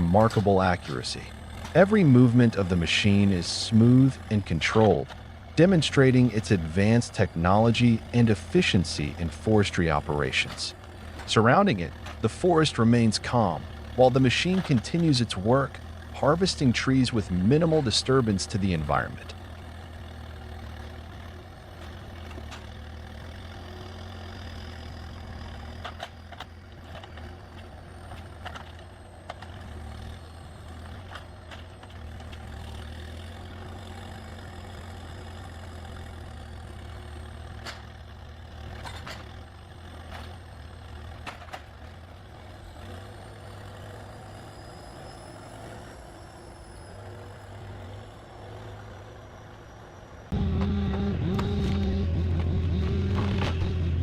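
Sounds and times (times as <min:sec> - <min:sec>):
heavy engine droning: 0:00.0 - 0:54.0
faint high whines: 0:43.1 - 0:54.0.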